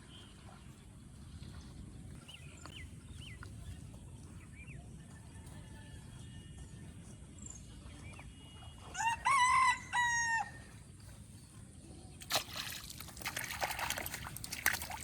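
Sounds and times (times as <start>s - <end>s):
water splashing and sloshing: 0.0s - 4.6s, 10.6s - 15.0s
rooster crowing: 5.1s - 6.8s, 8.9s - 10.7s.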